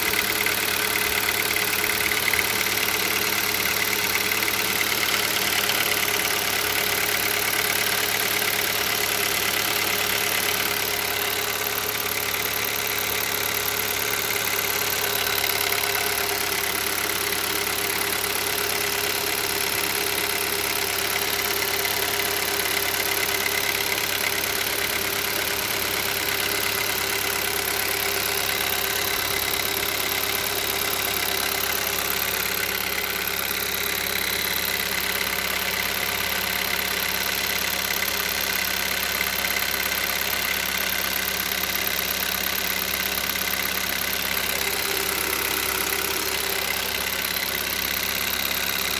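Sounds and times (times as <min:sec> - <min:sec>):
car engine idling with knock: 0:00.0 - 0:48.9.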